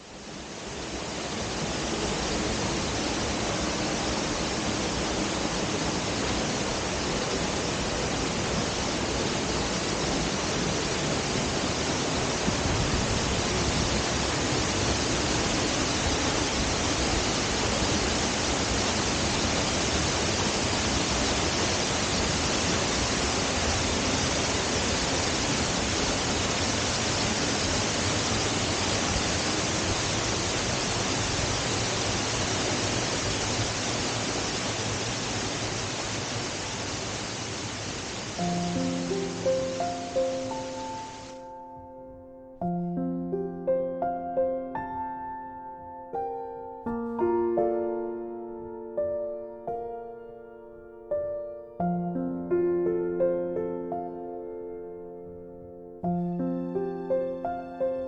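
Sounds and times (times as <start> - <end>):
water rushing over waterfall: 0.0 - 41.5.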